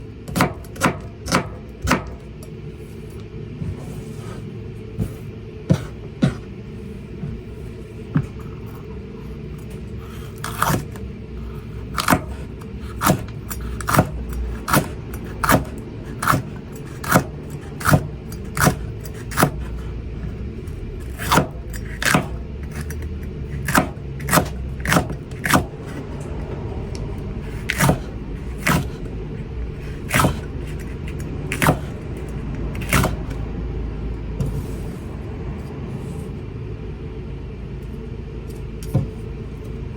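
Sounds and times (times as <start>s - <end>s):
knife chopping on cutting board: 0.3s - 2.3s, 5.0s - 6.5s, 10.4s - 11.0s, 11.9s - 19.9s, 21.0s - 26.2s, 27.4s - 29.0s, 29.8s - 32.0s, 32.8s - 33.4s, 38.8s - 39.2s
low rumble: 25.8s - 38.1s.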